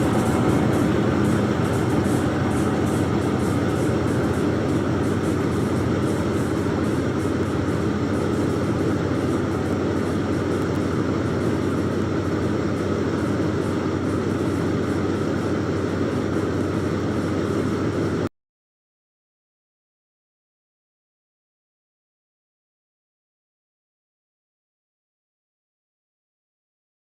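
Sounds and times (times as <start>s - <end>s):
vehicle engine running: 0.0s - 18.3s.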